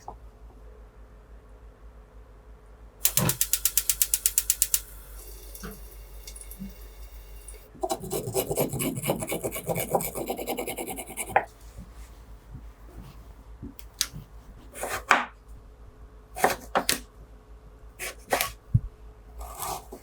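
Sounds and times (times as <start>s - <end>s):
ratchet clicks: 3.0s - 7.6s
rasping grind: 7.8s - 11.5s.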